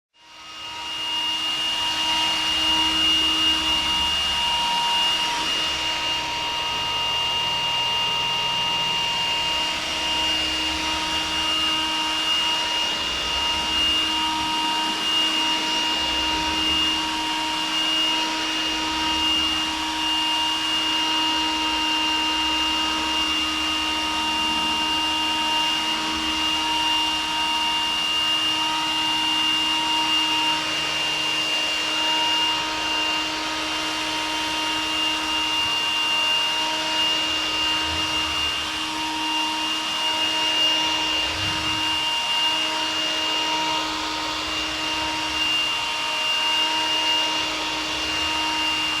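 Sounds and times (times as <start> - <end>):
vacuum cleaner running: 0.1 - 49.0.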